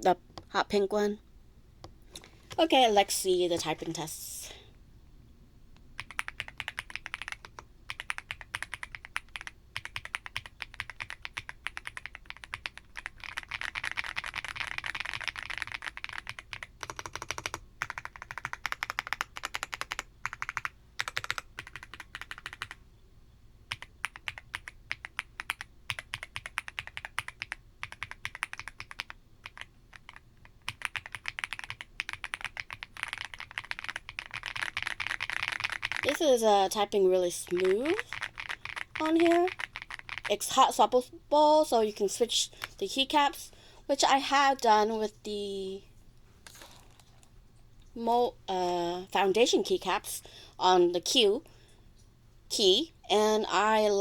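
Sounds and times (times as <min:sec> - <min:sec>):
fast typing on mechanical keyboard: 0:06.0 - 0:22.8, 0:23.7 - 0:36.3, 0:37.4 - 0:40.5.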